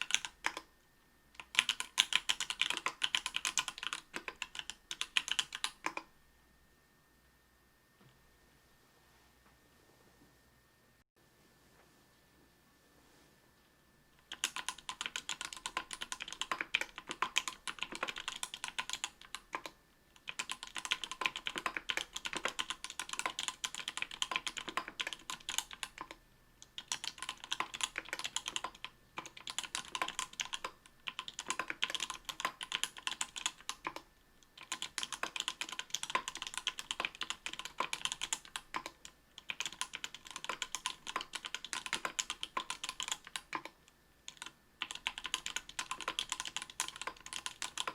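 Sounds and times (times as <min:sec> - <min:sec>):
mechanical keyboard typing: 0:00.0 - 0:00.7, 0:01.4 - 0:06.1, 0:14.2 - 0:47.9.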